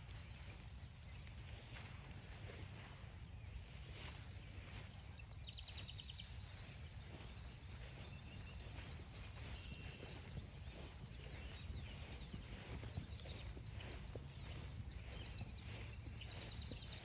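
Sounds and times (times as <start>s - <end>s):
soft swishes of walking: 0.0s - 17.0s
songbird trill: 0.0s - 17.0s.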